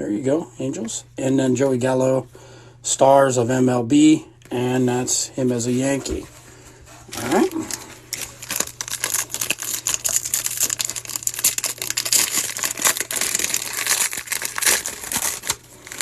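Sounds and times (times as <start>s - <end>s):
wrapper crinkling: 7.1s - 16.0s.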